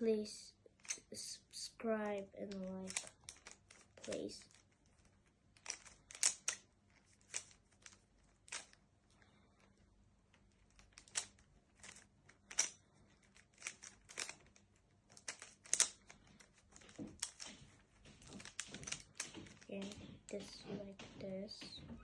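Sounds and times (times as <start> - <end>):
plastic puzzle cube clicking: 2.6 - 4.7, 5.6 - 8.8, 10.6 - 17.6, 18.2 - 19.6.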